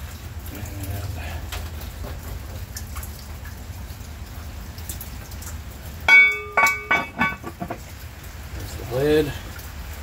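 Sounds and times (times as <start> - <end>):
steady rain: 0.0 - 10.0
iron lid clanking on pot: 6.1 - 7.8.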